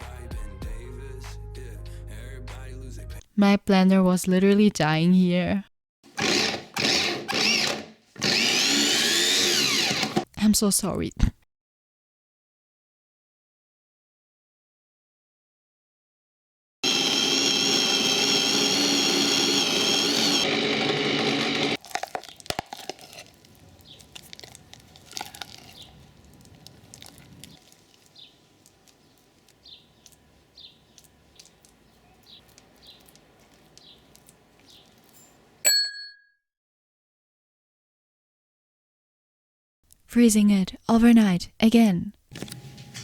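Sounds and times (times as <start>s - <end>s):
blender motor straining: 6.1s - 10.3s, 16.8s - 27.6s
scraping: 21.1s - 30.3s.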